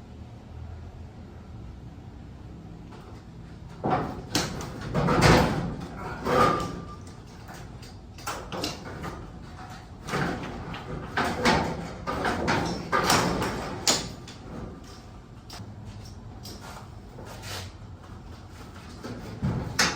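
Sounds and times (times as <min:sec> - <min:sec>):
metal garage door clanking: 0:03.6 - 0:15.6, 0:18.7 - 0:19.9.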